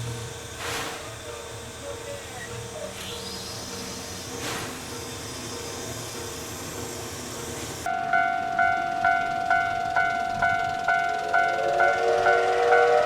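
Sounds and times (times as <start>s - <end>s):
steam hissing: 2.7s - 7.9s, 11.5s - 13.0s
level crossing bell ringing: 7.9s - 12.6s.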